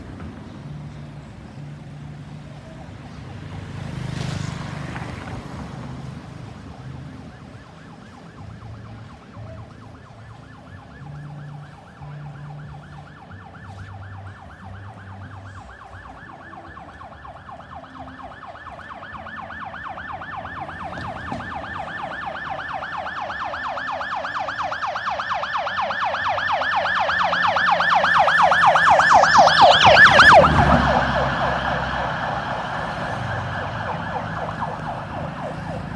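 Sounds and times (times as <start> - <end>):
traffic noise: 0.0 - 35.9
vehicle passing: 0.0 - 35.9
ambulance siren yelp: 2.4 - 35.9.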